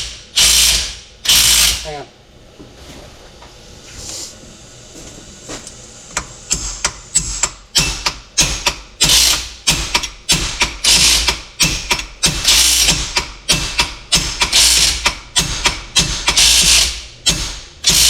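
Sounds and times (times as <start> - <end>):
ratchet wrench clicking: 0.4 - 1.9, 6.2 - 18.0.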